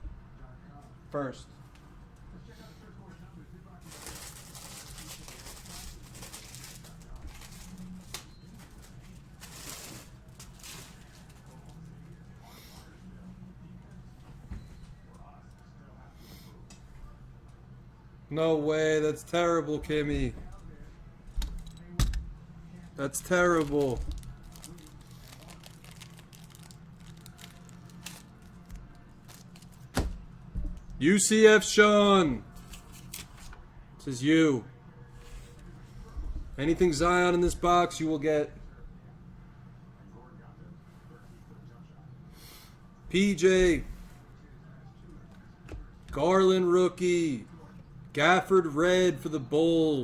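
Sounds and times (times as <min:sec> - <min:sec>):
steady low hum: 0:00.0 - 0:50.0
packaging crinkling: 0:03.8 - 0:11.8, 0:23.2 - 0:30.2.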